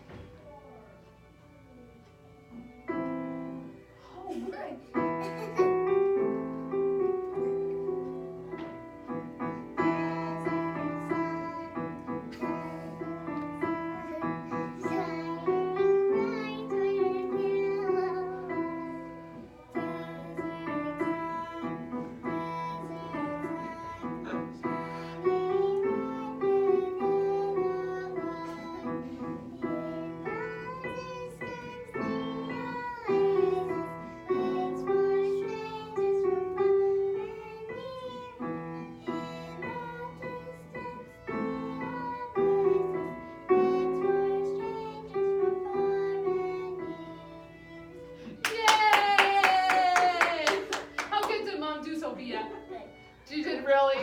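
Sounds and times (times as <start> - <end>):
piano accompaniment: 0.0 - 54.0
child singing: 9.4 - 48.0.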